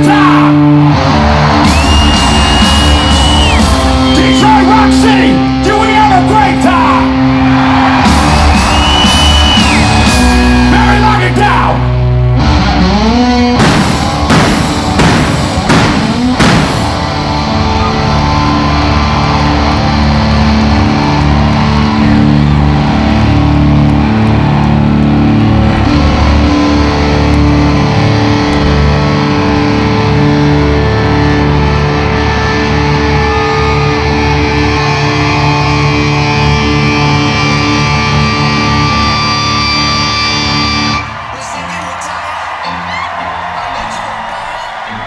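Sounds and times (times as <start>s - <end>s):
electric guitar chords: 0.0s - 41.3s
live rock band playing: 0.0s - 44.9s
heavy crashing hits: 13.6s - 17.4s.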